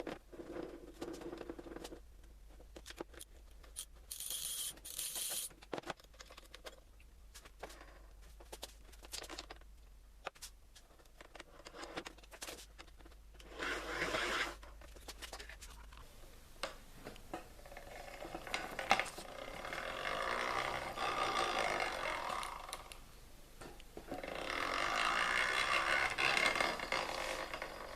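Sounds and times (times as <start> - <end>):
small clicks and handling knocks: 1.0 - 3.9, 5.3 - 13.5
hand-cranked grinder whirring: 13.4 - 14.6, 17.8 - 23.0, 24.1 - 27.9.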